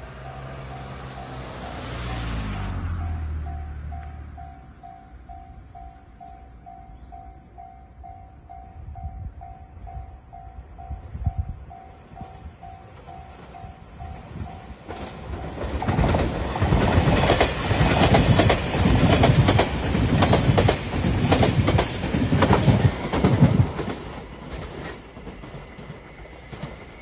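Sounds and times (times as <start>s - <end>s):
train wheels clacking over rails: 11.7s - 27.0s.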